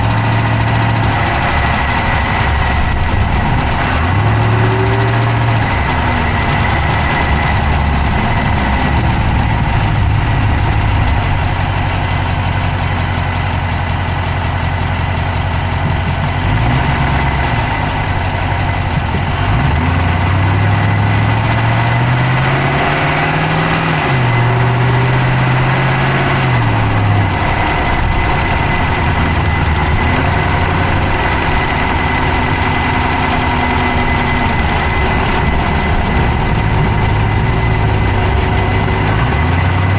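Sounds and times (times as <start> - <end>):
fast clicking in engine: 0.0 - 22.3
car engine idling and revving: 0.0 - 39.9.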